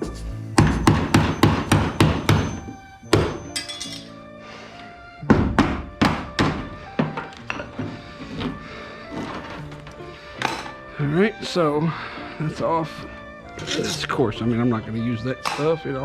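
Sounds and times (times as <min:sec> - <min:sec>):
hammer striking chisel on metal: 0:00.6 - 0:04.2, 0:05.3 - 0:07.9.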